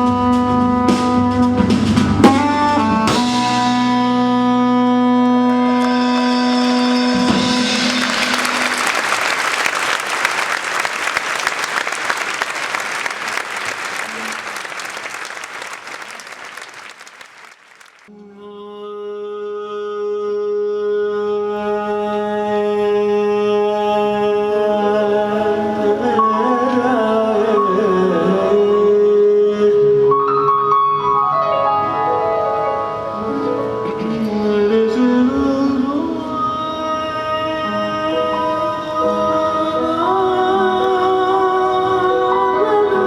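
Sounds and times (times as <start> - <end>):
applause: 5.7 - 18.1.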